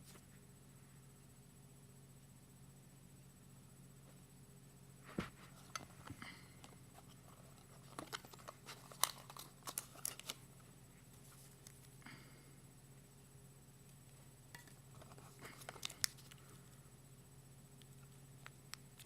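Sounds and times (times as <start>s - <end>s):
faint steady hum: 0.0s - 19.0s
packaging clicks and rustles: 5.6s - 10.4s, 14.9s - 16.4s.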